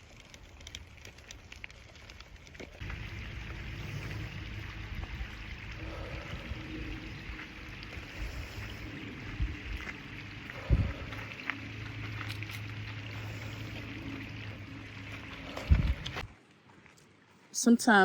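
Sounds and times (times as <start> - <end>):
running water rushing: 2.8 - 16.3.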